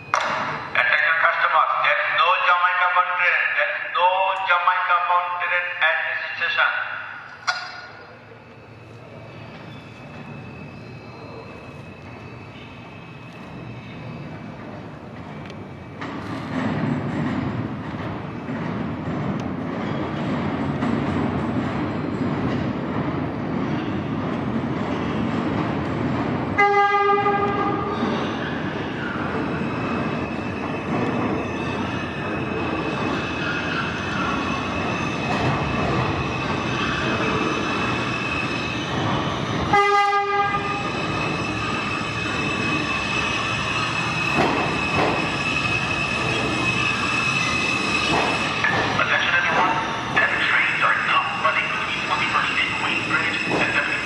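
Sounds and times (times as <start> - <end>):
subway train running: 0.0 - 54.0
train horn blasts: 26.6 - 27.9, 39.7 - 40.8.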